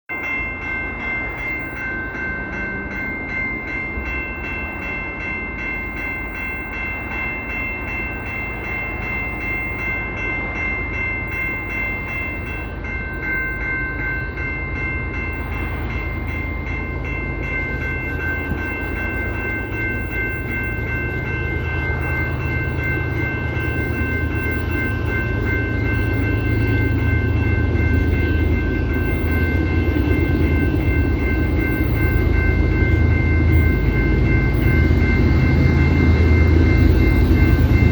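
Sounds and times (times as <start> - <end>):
steady high-pitched tone: 0.1 - 37.9
train rumbling: 0.1 - 37.9.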